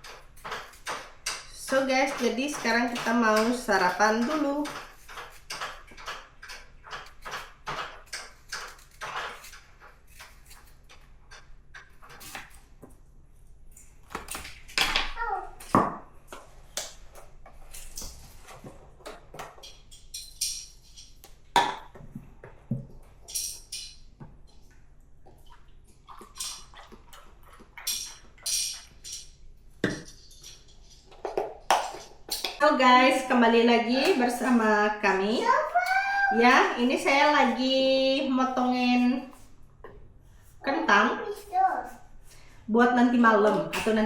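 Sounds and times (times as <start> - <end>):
dishes and cutlery clinking: 0.0 - 12.5, 17.2 - 22.0, 23.1 - 24.7, 26.1 - 32.6.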